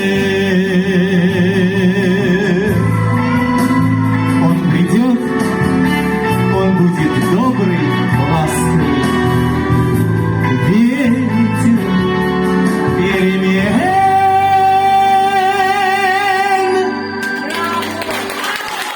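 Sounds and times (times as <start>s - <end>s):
person singing: 0.0s - 3.4s, 10.4s - 17.8s.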